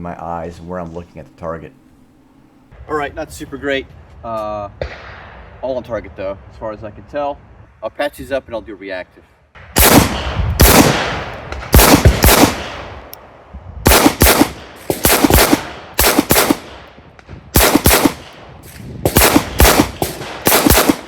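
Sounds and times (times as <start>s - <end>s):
handgun shots with echo: 17.6s - 21.0s.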